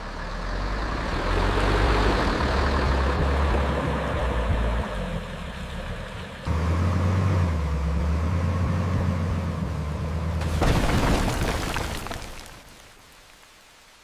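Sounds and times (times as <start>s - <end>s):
heavy vehicle engine running: 0.0s - 10.5s.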